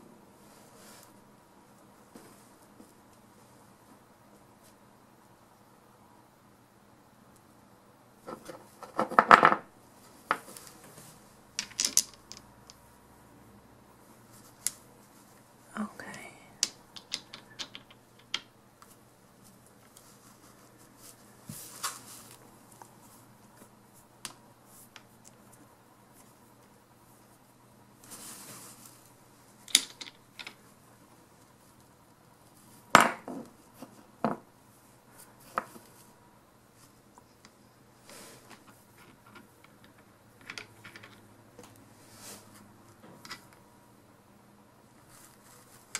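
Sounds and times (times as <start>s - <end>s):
small metal parts clinking: 11.6s - 12.4s, 16.6s - 18.4s, 29.7s - 30.6s
rustle: 18.8s - 37.1s, 40.4s - 43.6s, 44.9s - 45.9s.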